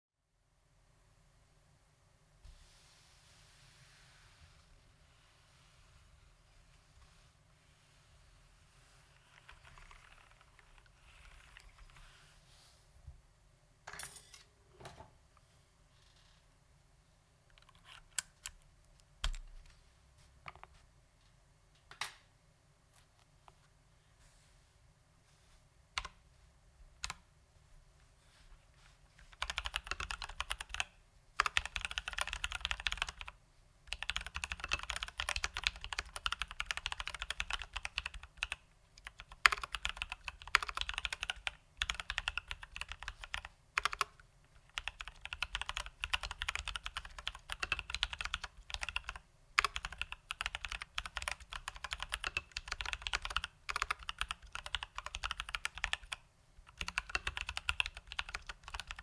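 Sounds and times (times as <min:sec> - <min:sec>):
fast mechanical keyboard typing: 0:09.2 - 0:12.0, 0:29.2 - 0:59.0.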